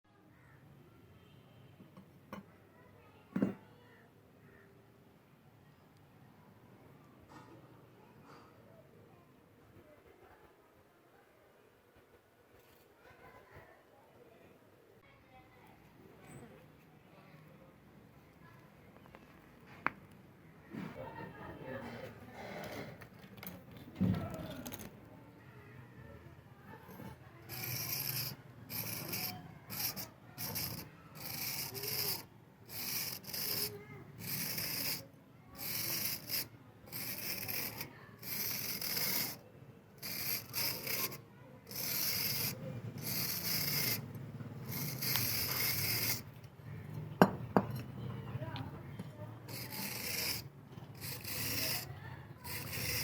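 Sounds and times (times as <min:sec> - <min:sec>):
scraping rust off steel file: 0:26.7 - 0:39.4, 0:40.0 - 0:53.0.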